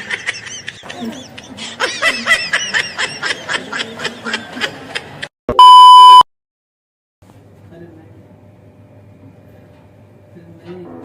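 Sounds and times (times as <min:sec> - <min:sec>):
loud steady beep tone: 0:05.5 - 0:06.3.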